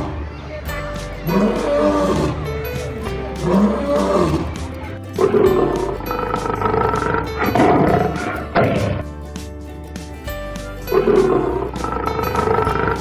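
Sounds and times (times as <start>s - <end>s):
background music: 0.0s - 13.0s
lion roaring: 1.2s - 2.5s, 3.4s - 4.6s, 5.2s - 9.1s, 10.9s - 13.0s.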